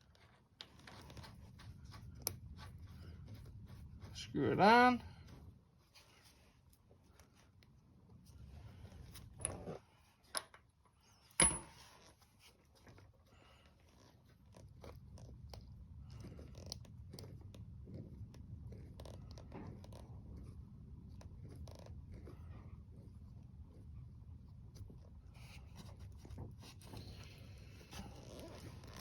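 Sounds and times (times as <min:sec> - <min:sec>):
low steady rumble: 0:00.1 - 0:10.2, 0:14.2 - 0:29.0.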